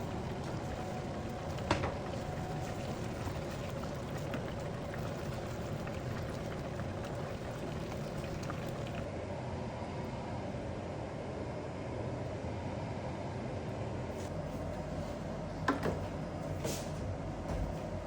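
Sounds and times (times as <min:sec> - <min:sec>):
risotto simmering in a pan: 0:00.0 - 0:09.1.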